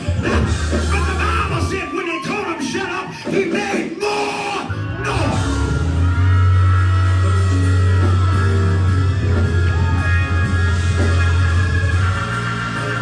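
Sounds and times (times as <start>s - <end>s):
heavy steady bass: 0.0s - 1.9s, 4.7s - 13.0s
church band music: 0.0s - 13.0s
voices crying out: 0.0s - 13.0s.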